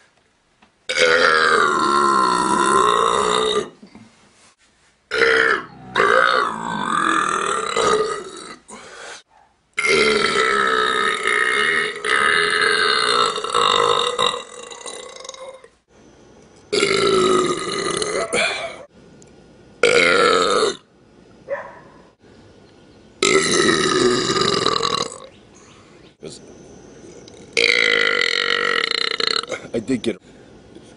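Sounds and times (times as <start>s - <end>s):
person belching: 0.9s - 3.8s, 5.1s - 8.7s, 9.8s - 15.7s, 16.7s - 18.9s, 19.8s - 20.8s, 23.2s - 25.3s, 27.3s - 29.7s.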